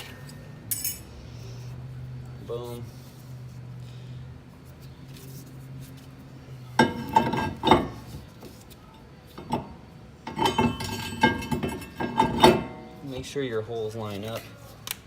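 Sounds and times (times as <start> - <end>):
brake rotor clanking on metal: 6.8 - 8.2, 9.4 - 13.0.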